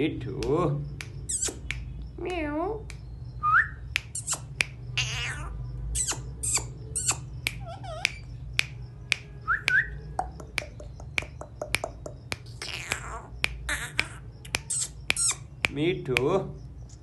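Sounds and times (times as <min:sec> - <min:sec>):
sharp clicks: 0:00.4 - 0:03.1, 0:03.8 - 0:05.2, 0:06.0 - 0:17.0
parrot rising chirp: 0:01.2 - 0:01.7, 0:03.4 - 0:08.4, 0:10.7 - 0:15.5
parrot making harsh calls: 0:04.2 - 0:08.3, 0:12.6 - 0:15.4
parrot cat-like meow: 0:05.0 - 0:06.6, 0:12.6 - 0:14.8.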